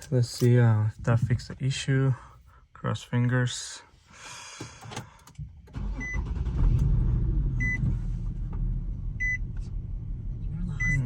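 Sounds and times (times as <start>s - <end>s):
car engine starting and idling: 4.6s - 11.0s.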